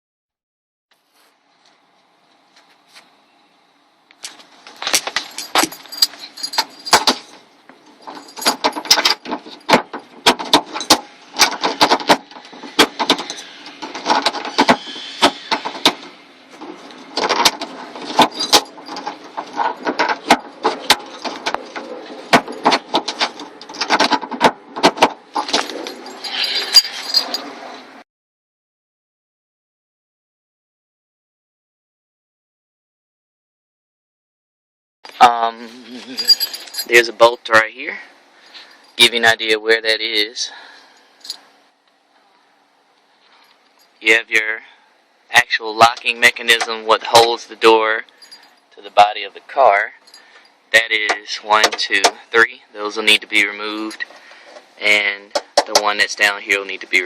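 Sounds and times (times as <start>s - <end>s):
hand tools clinking and rattling: 4.2s - 27.7s, 35.1s - 37.4s, 48.1s - 48.9s, 50.0s - 52.3s.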